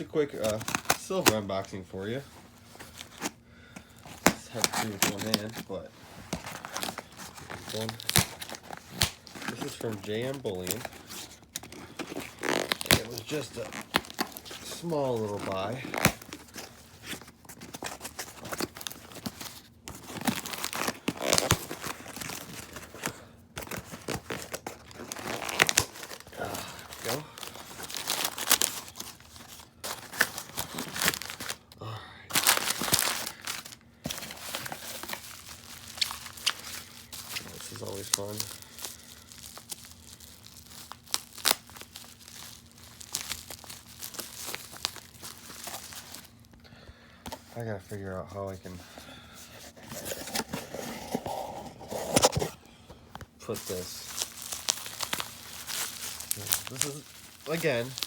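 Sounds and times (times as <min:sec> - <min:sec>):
packaging tearing and crinkling: 0:00.0 - 0:46.6, 0:49.7 - 0:52.6, 0:53.4 - 0:58.0.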